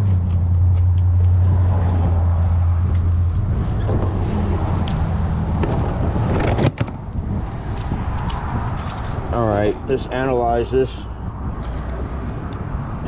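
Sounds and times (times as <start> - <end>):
low motor hum: 0.0 - 8.2.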